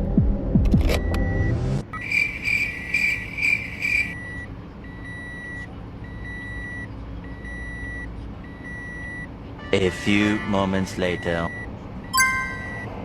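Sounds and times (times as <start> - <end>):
high electronic beeping tone: 2.0 - 4.2, 12.2 - 13.0
chiming electronic beeps: 12.2 - 13.0.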